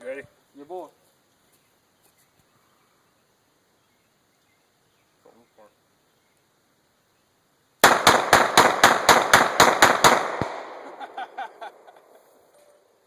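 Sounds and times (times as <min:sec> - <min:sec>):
pistol shots: 0:07.8 - 0:11.0
gunshot echo: 0:07.8 - 0:11.1.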